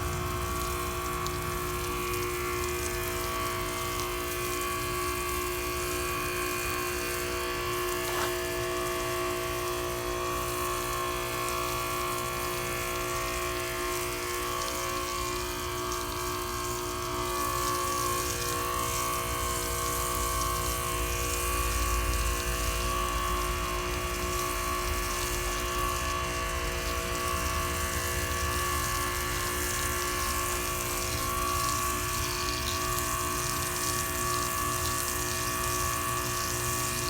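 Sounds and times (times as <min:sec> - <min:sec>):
pressure washer motor whine: 0:00.0 - 0:37.0
water spraying from nozzle: 0:00.0 - 0:37.0.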